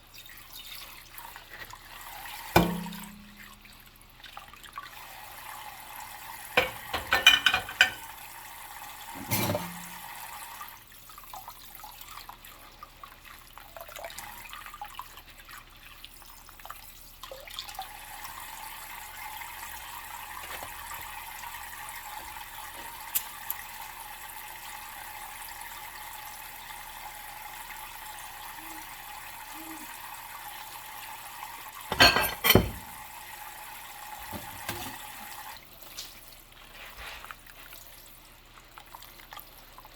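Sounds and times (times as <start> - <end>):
tap water running into sink: 0.5 - 10.7, 17.4 - 36.5
dishes clattering: 2.6 - 3.5, 6.6 - 8.1, 9.2 - 10.0, 31.9 - 33.0, 34.3 - 35.1.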